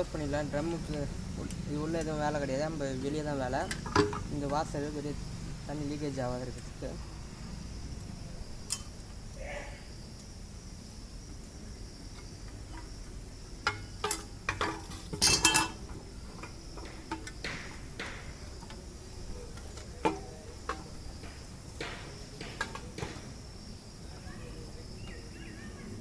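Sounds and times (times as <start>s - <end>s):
metal clattering: 0.0s - 5.0s, 13.6s - 23.2s
metal casing clinks and knocks: 3.6s - 4.7s, 8.6s - 9.0s, 13.6s - 23.2s.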